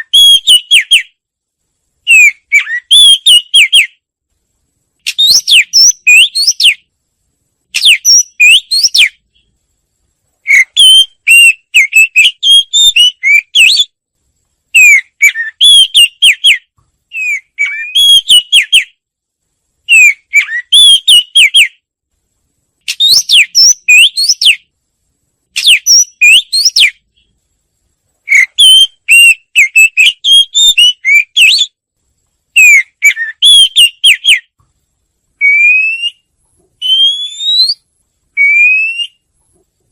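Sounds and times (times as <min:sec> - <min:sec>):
wagtail twittering song: 0:00.0 - 0:01.2, 0:02.1 - 0:04.0, 0:05.0 - 0:06.9, 0:07.8 - 0:09.5, 0:10.4 - 0:14.0, 0:14.7 - 0:19.0, 0:19.9 - 0:21.8, 0:22.9 - 0:24.7, 0:25.6 - 0:27.3, 0:28.3 - 0:31.8, 0:32.6 - 0:34.6, 0:35.4 - 0:37.8.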